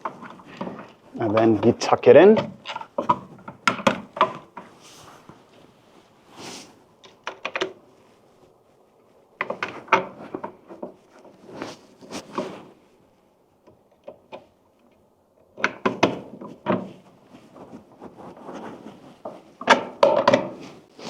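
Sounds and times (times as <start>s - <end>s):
electrical outlet clicks and knocks: 15.6s - 16.8s, 19.7s - 20.6s.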